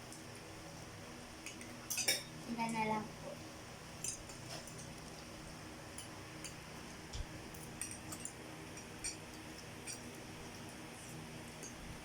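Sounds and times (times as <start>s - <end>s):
forks clinking on plates: 1.4s - 2.4s.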